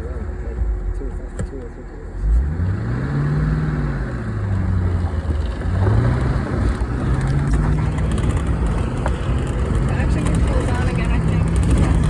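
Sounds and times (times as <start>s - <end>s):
car engine revving: 0.0s - 12.0s.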